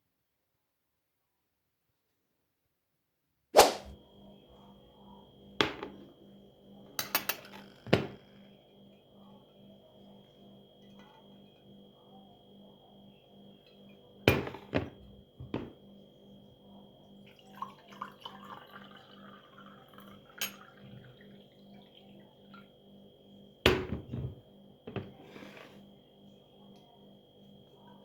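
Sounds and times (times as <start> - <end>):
cups and dishes clinking: 5.6 - 6.1, 7.0 - 8.3, 14.3 - 15.8, 17.4 - 21.2, 23.7 - 25.8
water running: 17.3 - 22.2.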